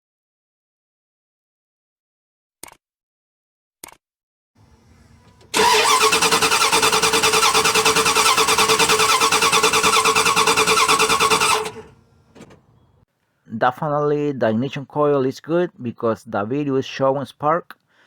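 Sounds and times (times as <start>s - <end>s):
starter cranking engine: 4.6s - 13.0s.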